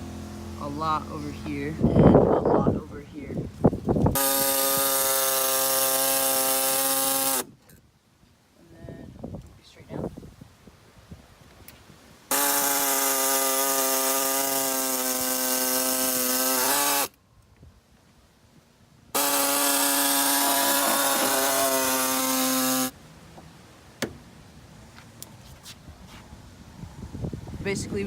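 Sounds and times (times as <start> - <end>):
power cutting tool whining: 4.1 - 7.5, 12.3 - 17.1, 19.2 - 23.0.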